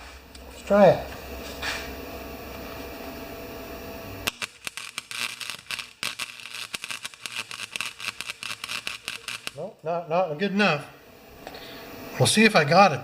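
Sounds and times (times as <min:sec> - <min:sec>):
steady hum: 0:00.0 - 0:13.0
welding arc crackling: 0:01.2 - 0:09.9.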